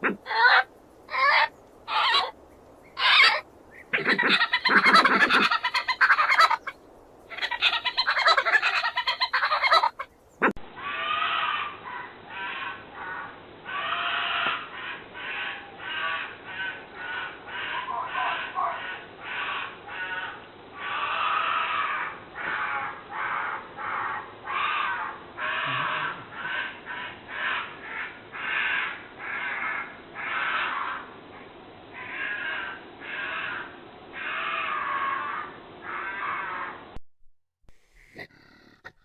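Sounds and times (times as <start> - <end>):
badger rasping cries: 0.0 - 2.3, 3.0 - 6.6.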